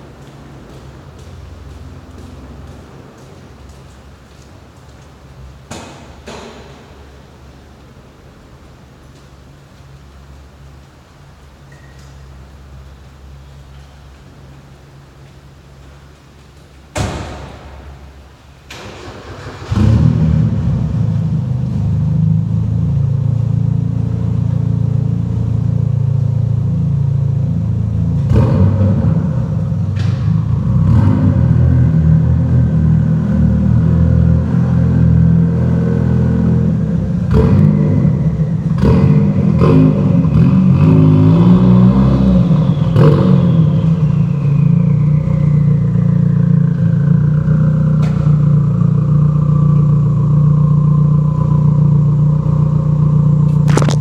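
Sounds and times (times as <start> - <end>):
turbocharged car engine running: 19.6 - 54.0.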